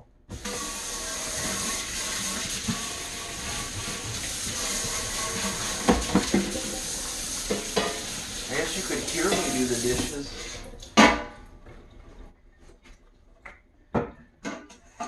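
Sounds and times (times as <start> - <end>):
tap water running into sink: 0.3 - 11.1
dishes clinking: 7.5 - 10.1.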